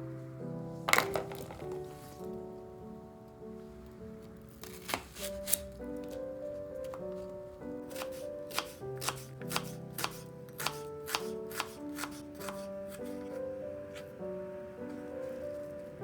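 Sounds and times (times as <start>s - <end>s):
background music: 0.0s - 16.0s
knife chopping on cutting board: 4.6s - 6.2s, 7.9s - 14.0s.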